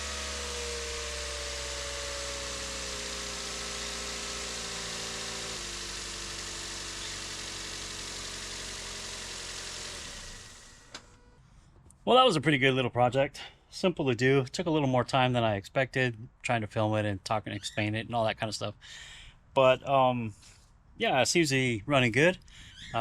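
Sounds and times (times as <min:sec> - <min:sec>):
car engine idling: 0:00.0 - 0:11.4.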